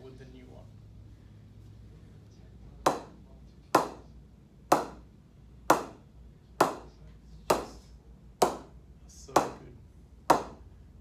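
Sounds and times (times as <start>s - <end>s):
cricket ball knocking on bat: 2.9s - 3.2s, 3.8s - 4.0s, 4.7s - 5.0s, 5.7s - 6.0s, 6.6s - 6.8s, 8.4s - 8.7s, 10.3s - 10.6s.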